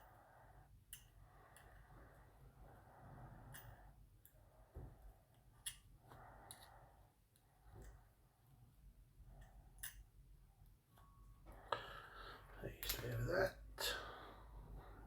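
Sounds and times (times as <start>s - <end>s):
small metal tools clicking: 9.4s - 10.1s.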